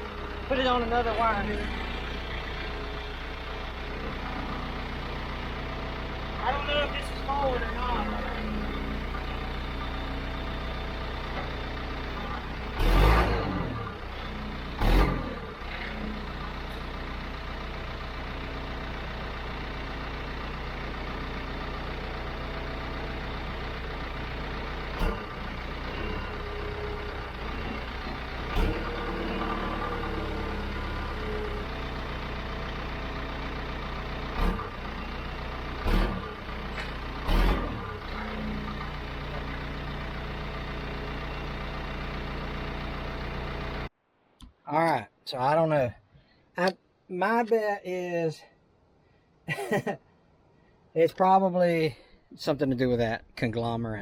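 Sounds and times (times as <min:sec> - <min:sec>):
diesel engine idling: 0:00.0 - 0:43.9.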